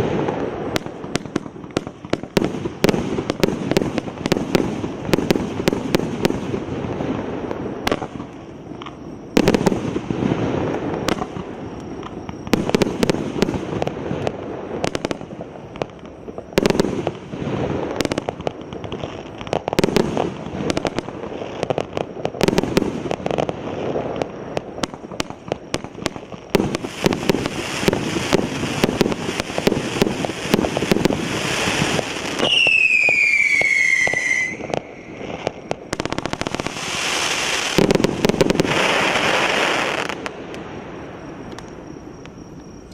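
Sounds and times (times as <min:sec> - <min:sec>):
firework bangs and crackle: 0:00.0 - 0:42.9
firework whistle gliding down: 0:26.8 - 0:35.7.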